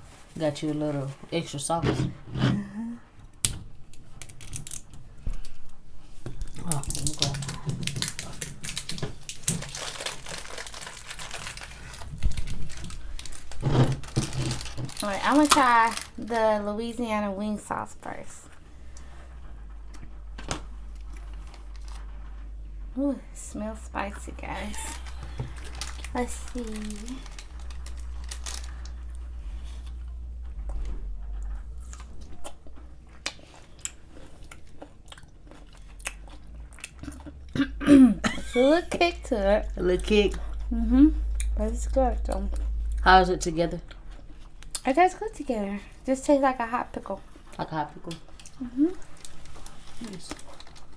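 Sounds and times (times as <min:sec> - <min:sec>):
plastic packaging crinkling: 0:04.1 - 0:05.0, 0:06.4 - 0:17.1, 0:19.7 - 0:22.6, 0:24.2 - 0:30.4, 0:48.2 - 0:50.9
low hum: 0:05.1 - 0:47.6
chewing crunchy pickle: 0:24.7 - 0:37.8.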